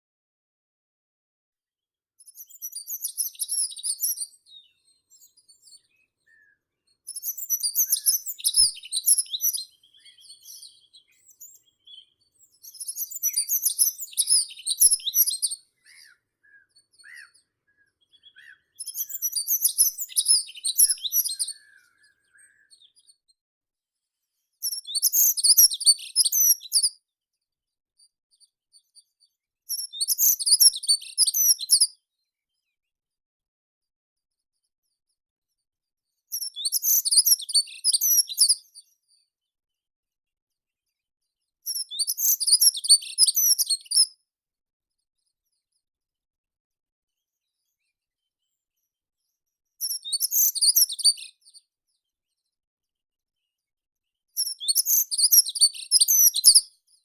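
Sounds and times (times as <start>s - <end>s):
songbird singing: 2.4s - 23.0s.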